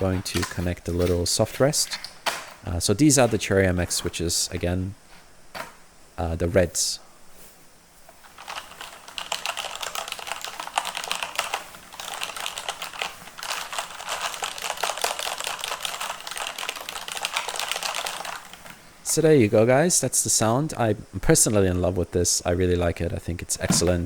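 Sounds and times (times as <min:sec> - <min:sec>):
typing on mechanical keyboard: 0:08.3 - 0:18.7.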